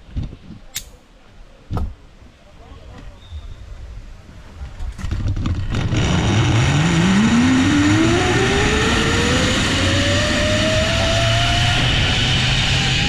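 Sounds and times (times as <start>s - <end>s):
zipline pulleys whining on cable: 5.9s - 13.0s.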